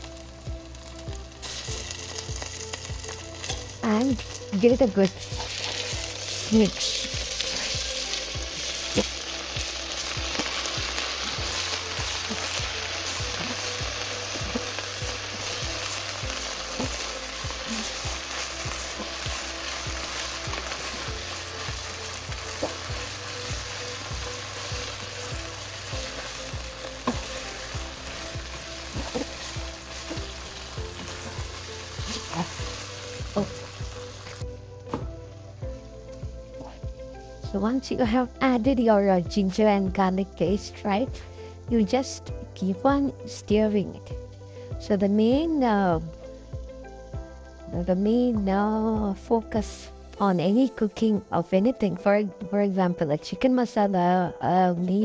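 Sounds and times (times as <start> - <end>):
onions sizzling in a pan: 0.0 - 54.0.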